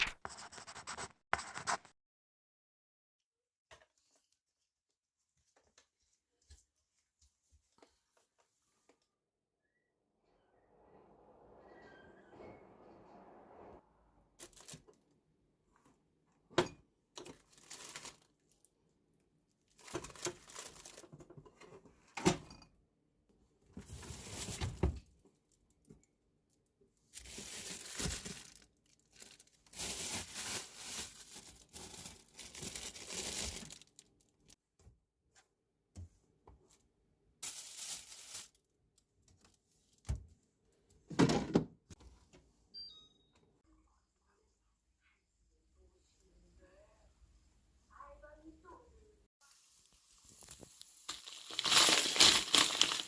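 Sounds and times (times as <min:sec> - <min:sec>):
packaging crinkling and tearing: 0:17.3 - 0:18.5, 0:19.8 - 0:21.1, 0:27.2 - 0:34.1, 0:50.2 - 0:53.0.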